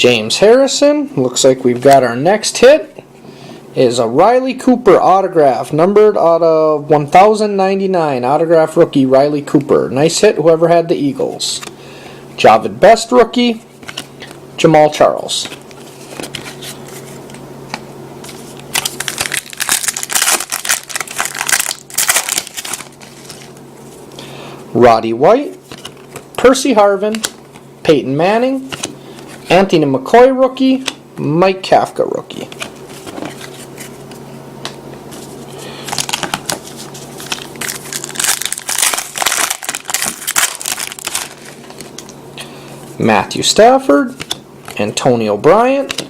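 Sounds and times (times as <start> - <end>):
steady low hum: 0.0 - 46.0
wrapper tearing and crinkling: 18.6 - 23.6, 35.9 - 42.1.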